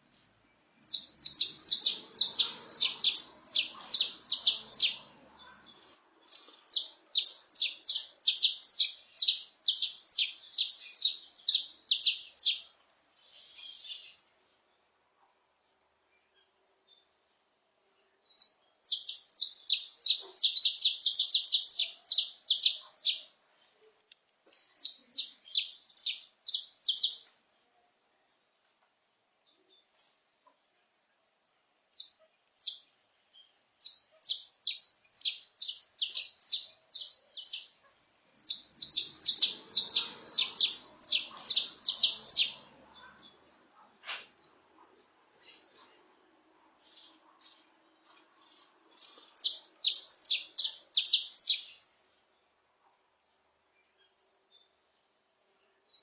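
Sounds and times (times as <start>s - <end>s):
finch singing: 0.8s - 12.7s, 18.3s - 23.3s, 24.5s - 27.3s, 33.8s - 43.6s, 44.8s - 52.0s.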